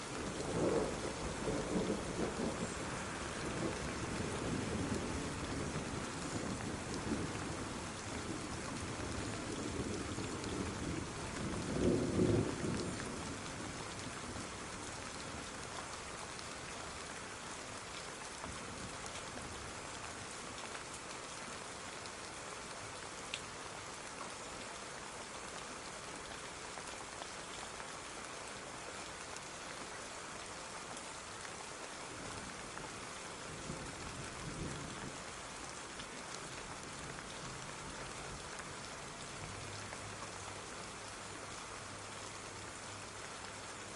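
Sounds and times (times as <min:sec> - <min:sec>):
steady rain: 0:00.0 - 0:43.9
thunder rumbling: 0:00.2 - 0:13.5.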